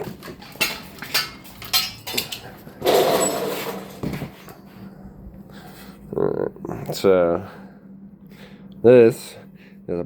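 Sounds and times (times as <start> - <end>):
metal parts clinking: 0.2 - 4.0
metal scraping clatter: 0.2 - 4.3.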